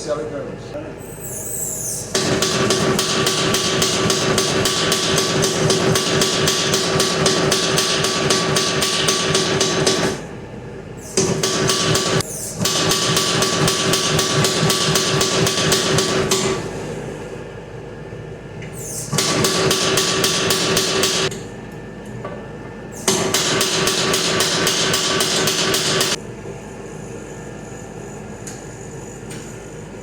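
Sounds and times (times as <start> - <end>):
power hammer striking hot steel: 2.0 - 10.3, 11.1 - 16.7, 19.0 - 21.3, 23.0 - 26.2.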